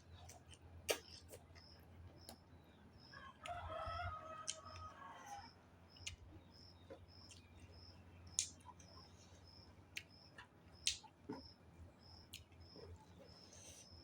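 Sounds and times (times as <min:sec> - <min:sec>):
chewing clicks: 0:04.4 - 0:04.9, 0:05.9 - 0:07.5, 0:08.3 - 0:09.0, 0:09.9 - 0:11.6, 0:12.2 - 0:13.0.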